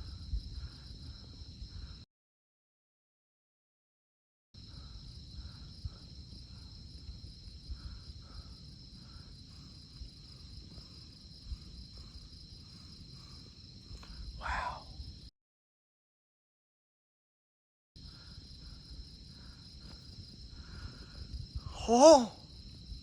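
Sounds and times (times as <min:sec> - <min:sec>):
insects trilling: 0:00.0 - 0:02.0, 0:04.6 - 0:15.3, 0:18.0 - 0:23.0.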